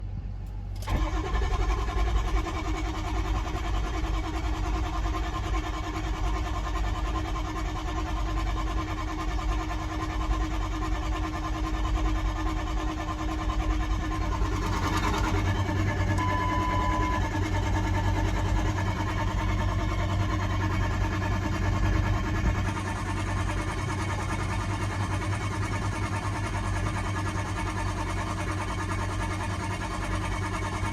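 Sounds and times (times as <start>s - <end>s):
starter cranking engine: 0.4s - 10.6s, 12.8s - 26.2s.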